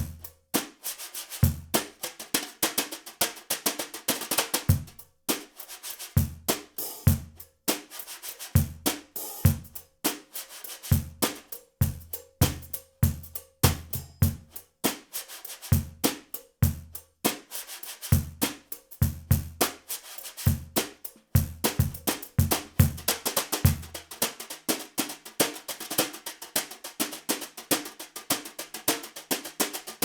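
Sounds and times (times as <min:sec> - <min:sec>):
snare drum strokes: 0:00.0 - 0:16.4, 0:17.2 - 0:30.0
quick hi-hat strokes: 0:00.0 - 0:26.7.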